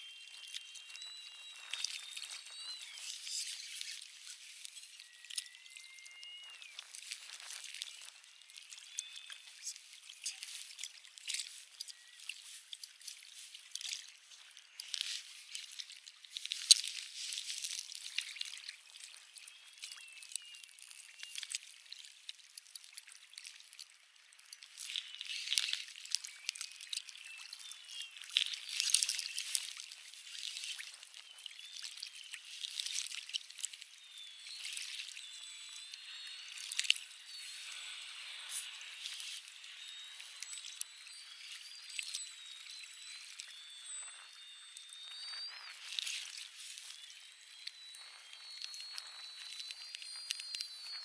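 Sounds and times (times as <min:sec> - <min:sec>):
small sharp clicks and splashes: 0:00.3 - 0:44.4, 0:45.0 - 0:51.0
water trickling and lapping: 0:06.7 - 0:42.3.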